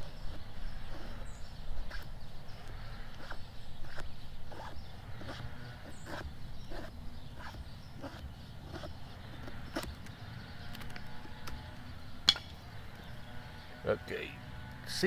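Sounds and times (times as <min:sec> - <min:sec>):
knife scraping ferro rod: 0:00.0 - 0:10.1.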